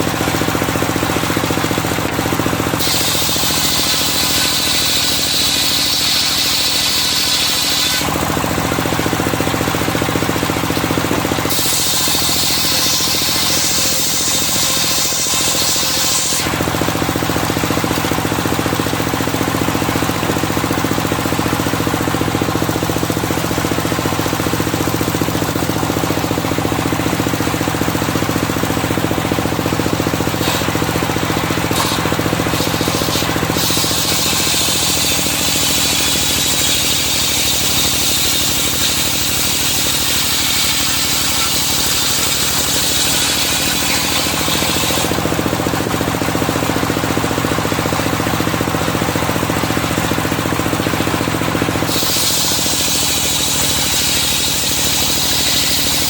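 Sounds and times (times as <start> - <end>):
saw blade cutting timber: 0.0 - 56.0
sawmill engine drone: 0.0 - 56.0.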